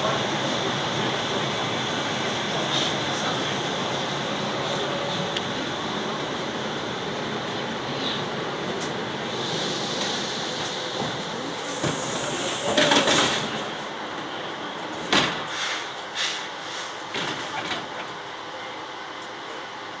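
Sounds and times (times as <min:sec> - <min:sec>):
train running noise: 0:00.0 - 0:20.0
loud hiss: 0:09.2 - 0:13.6.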